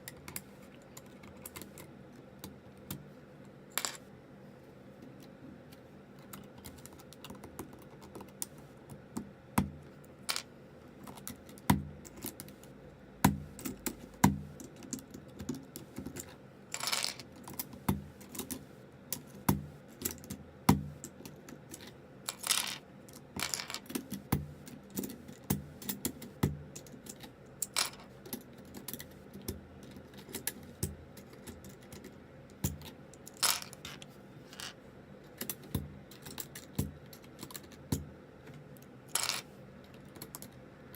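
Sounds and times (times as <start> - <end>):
keycaps clicking and snapping: 0.0 - 3.0, 6.2 - 9.7, 13.2 - 22.4, 23.1 - 33.8, 35.3 - 40.6.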